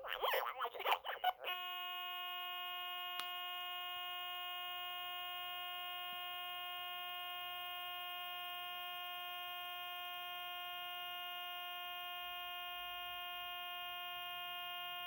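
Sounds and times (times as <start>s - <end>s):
garbled electronic toy voice: 0.0s - 1.6s.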